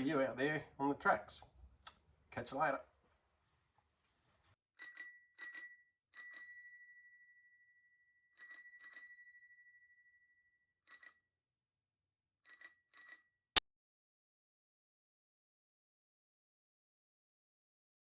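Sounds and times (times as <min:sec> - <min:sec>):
small bell ringing: 0:04.8 - 0:10.3, 0:10.9 - 0:11.8, 0:12.5 - 0:13.6.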